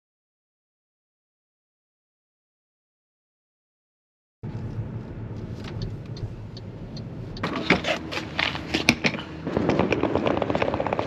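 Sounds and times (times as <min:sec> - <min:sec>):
steady low rumble: 0:04.4 - 0:11.0.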